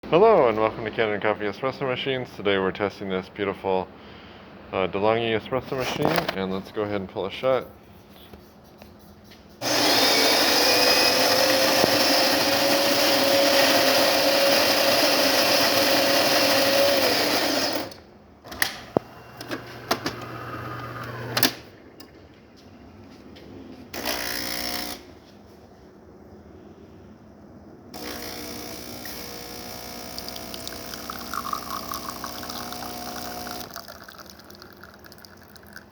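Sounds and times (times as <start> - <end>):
espresso machine low hum: 9.6 - 17.9, 18.9 - 22.0, 24.0 - 25.0, 28.0 - 35.8
coffee grinder whirring: 9.6 - 18.0, 19.2 - 21.4, 24.0 - 25.0, 28.0 - 35.8.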